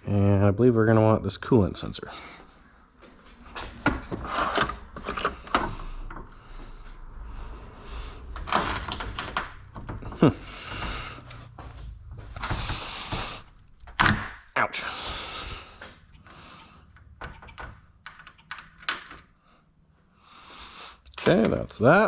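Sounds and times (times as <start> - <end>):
tools clicking and knocking on parts: 16.9 - 19.3.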